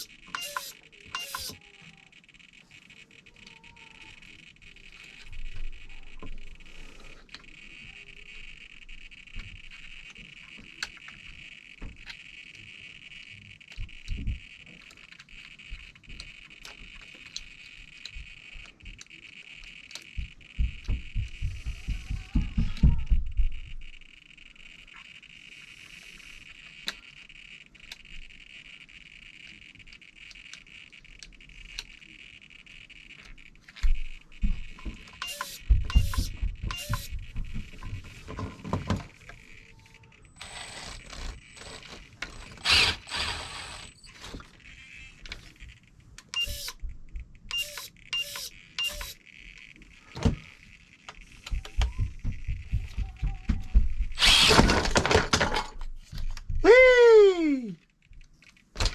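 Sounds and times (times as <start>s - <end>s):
servo whirring: 0.0s - 46.8s, 47.4s - 51.8s, 54.1s - 55.1s
clicks and knocks of handled parts: 54.2s - 56.5s.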